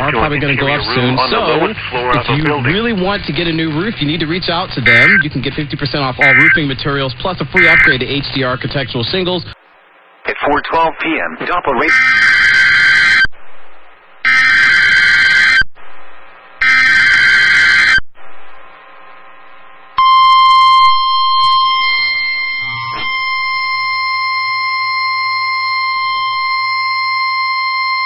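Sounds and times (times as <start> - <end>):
steady attention tone: 0.0 - 28.0
screeching digital data bursts: 4.7 - 5.3, 6.2 - 8.2, 16.6 - 18.0, 20.0 - 27.3.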